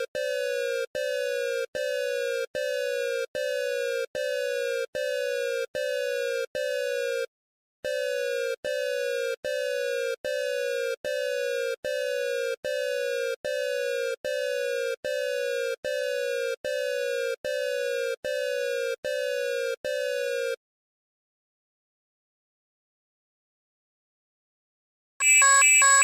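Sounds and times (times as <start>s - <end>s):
buzzy alarm beeps: 7.9s - 20.6s, 25.2s - 26.0s.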